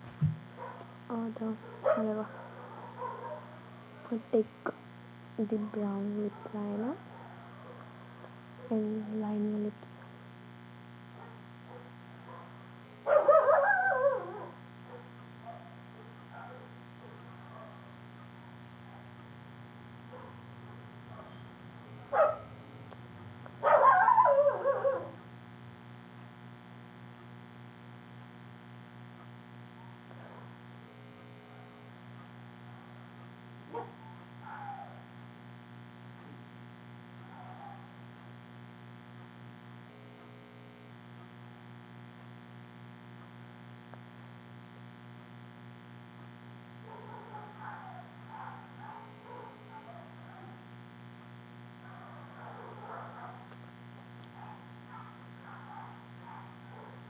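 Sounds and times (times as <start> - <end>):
electric fan humming: 0.0 - 34.5
wavering cry: 13.3 - 14.6, 23.8 - 25.2, 34.5 - 35.0.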